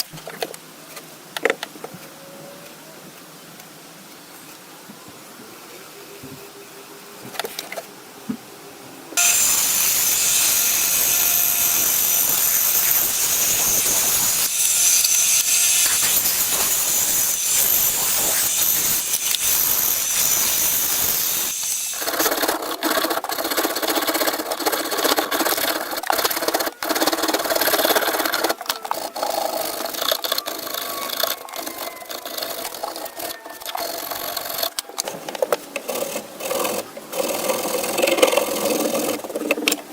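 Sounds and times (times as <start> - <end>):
power tool grinding: 9.2 - 22.6, 33.7 - 39.8
rough scraping or rasping: 9.2 - 30.3, 32.1 - 39.8.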